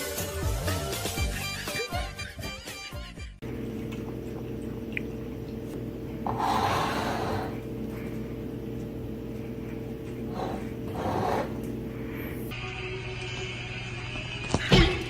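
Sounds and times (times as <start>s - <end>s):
low machine hum: 3.4s - 12.6s.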